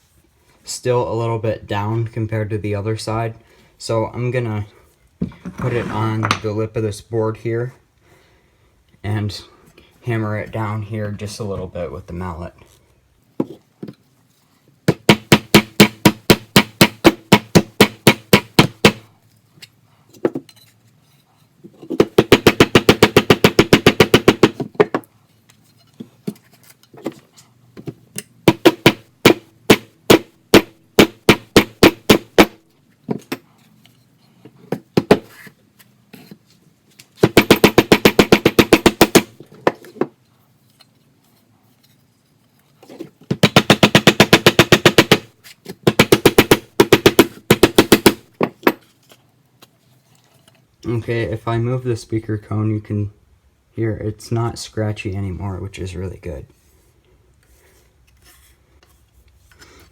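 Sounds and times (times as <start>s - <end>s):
mallet striking metal frame: 14.9s - 19.0s, 28.5s - 32.6s, 43.4s - 48.7s.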